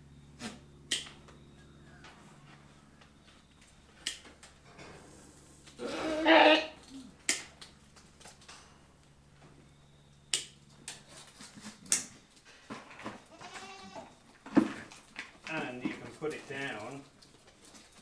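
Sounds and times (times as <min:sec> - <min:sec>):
goat bleating: 0:05.8 - 0:07.1, 0:13.3 - 0:14.2.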